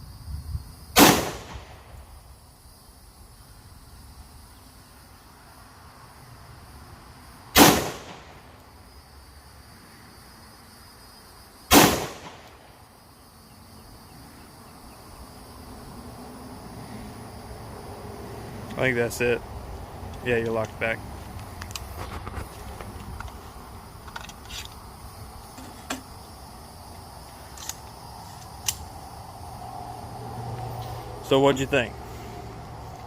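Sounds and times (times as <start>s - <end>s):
rifle shots: 1.0s - 1.8s, 7.6s - 8.4s, 11.7s - 12.6s.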